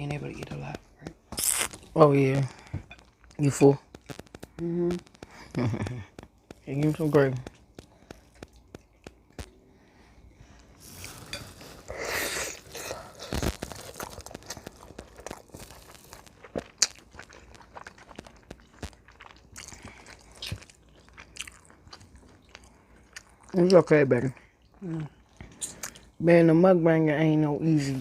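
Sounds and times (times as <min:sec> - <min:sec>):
person biting and chewing food: 0:01.1 - 0:09.7, 0:10.7 - 0:23.6
mouth clicks and smacks: 0:03.2 - 0:06.7, 0:07.3 - 0:09.6.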